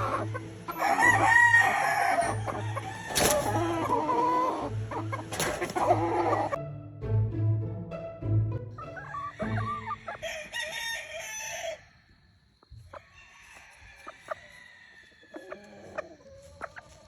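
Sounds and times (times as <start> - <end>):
roosters clucking: 0.0 - 6.6, 8.8 - 17.0
roosters crowing: 0.0 - 6.6, 8.8 - 17.0.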